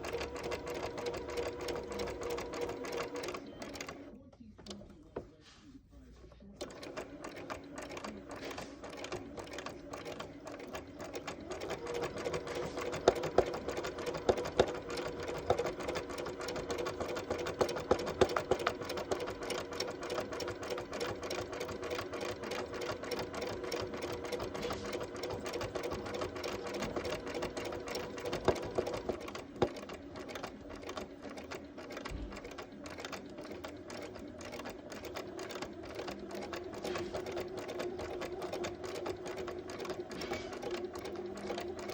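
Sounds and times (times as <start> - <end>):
sewing machine motor hum: 0.0 - 5.0, 6.6 - 41.9
sewing machine needle patter: 0.0 - 5.0, 6.6 - 41.9.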